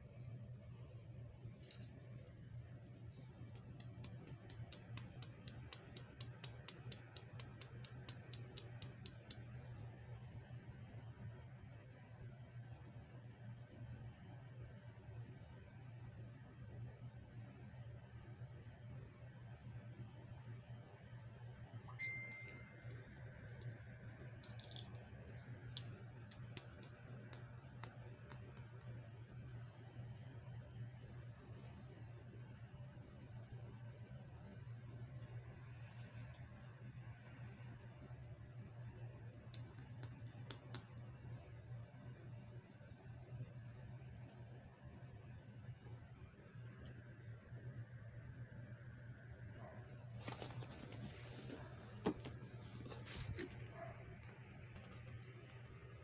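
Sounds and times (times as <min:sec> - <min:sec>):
low steady hum: 0:00.0 - 0:56.0
rapid small clicks: 0:03.2 - 0:09.6, 0:22.3 - 0:30.9, 0:39.4 - 0:41.2.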